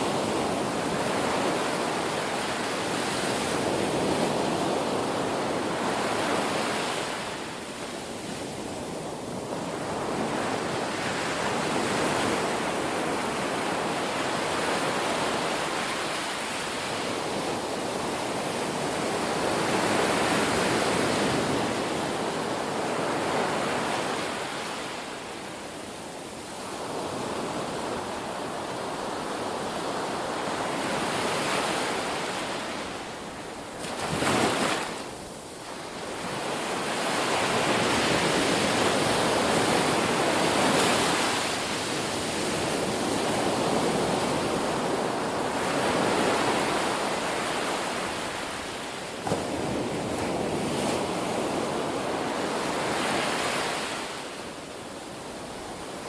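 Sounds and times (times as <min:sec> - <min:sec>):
ocean waves breaking on shore: 0:00.0 - 0:56.0.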